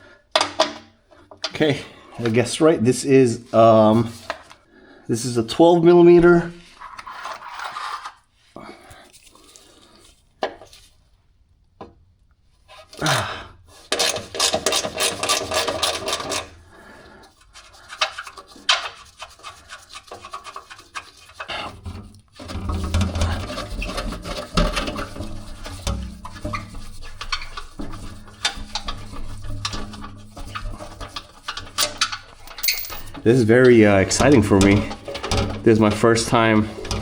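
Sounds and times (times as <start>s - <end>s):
rubbing: 13.7s - 37.0s.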